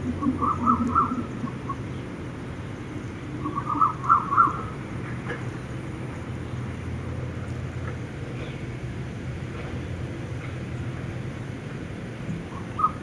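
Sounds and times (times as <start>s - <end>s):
bird calling quick notes: 0.0s - 1.8s
wind rumble: 0.0s - 13.0s.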